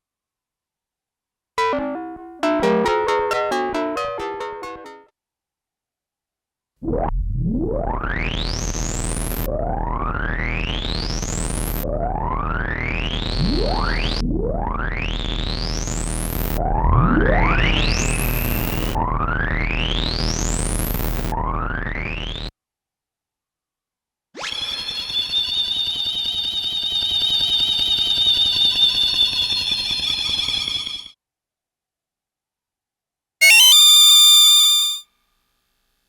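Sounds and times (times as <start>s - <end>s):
synthesizer rising pitch sweeps: 33.4s - 35.0s.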